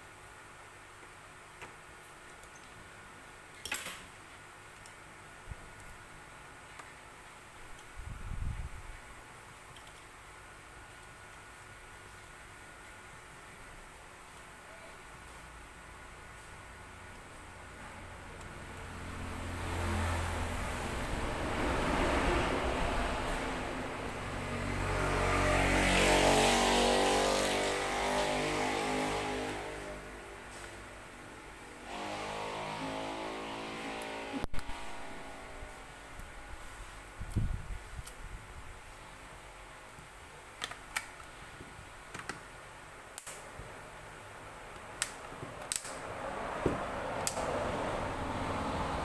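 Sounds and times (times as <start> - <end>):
small tools clicking and tapping: 1.6 - 2.8
vehicle engine passing by: 18.5 - 36.9, 45.9 - 49.0.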